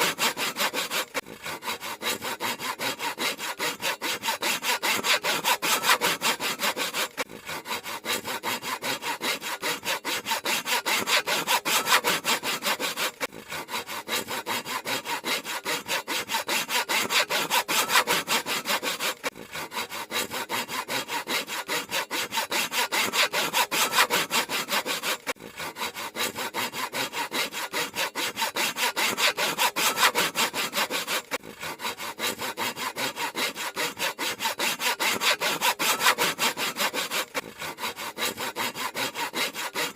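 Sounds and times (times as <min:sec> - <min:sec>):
handsaw cutting wood: 0:00.0 - 0:39.9.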